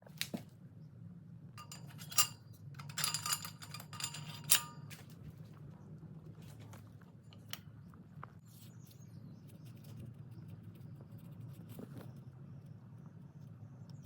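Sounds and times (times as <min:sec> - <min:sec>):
steady low hum: 0:00.0 - 0:14.0
metal parts clinking: 0:01.6 - 0:05.0.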